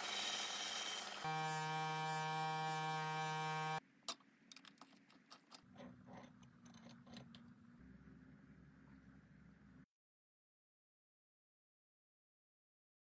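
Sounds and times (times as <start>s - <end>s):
power tool motor buzzing: 0.0s - 3.8s.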